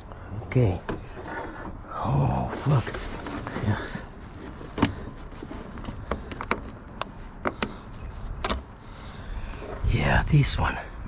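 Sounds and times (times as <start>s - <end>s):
tools and car parts clicking: 4.3s - 8.7s.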